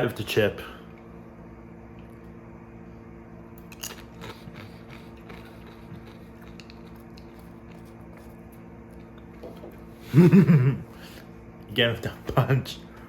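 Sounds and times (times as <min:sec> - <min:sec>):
steady low hum: 0:00.0 - 0:13.0
crunching a chip: 0:03.6 - 0:09.2.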